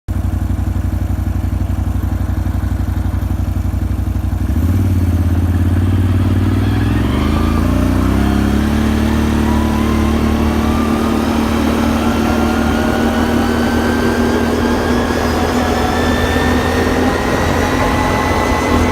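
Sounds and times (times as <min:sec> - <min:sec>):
atv engine drone: 0:00.1 - 0:18.9
thin rising whine: 0:06.0 - 0:18.9.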